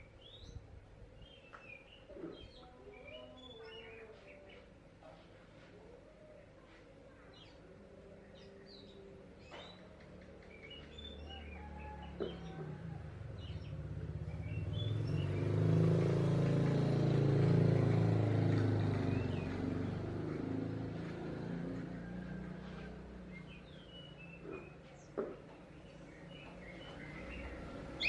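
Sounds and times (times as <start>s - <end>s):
songbird chirps: 0.0s - 28.0s
passing vehicle engine: 10.7s - 28.0s.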